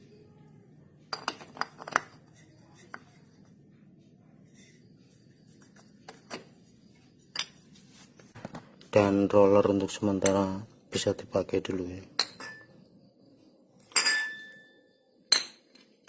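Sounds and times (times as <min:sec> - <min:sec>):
metal parts clicking and clinking: 0:01.1 - 0:02.9.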